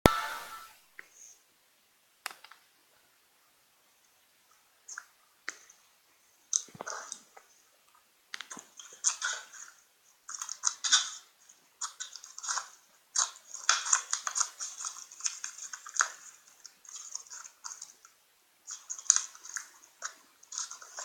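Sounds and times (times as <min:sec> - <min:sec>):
slime crackling and popping: 0:10.3 - 0:11.2, 0:11.8 - 0:18.0.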